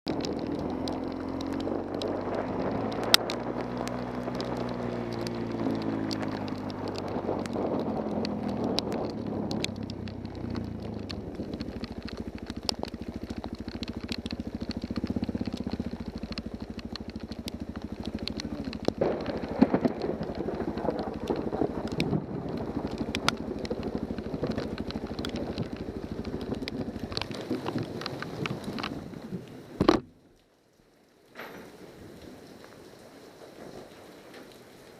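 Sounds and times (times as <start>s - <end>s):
rain pattering: 0.1s - 34.9s
motorcycle engine idling: 9.7s - 27.8s.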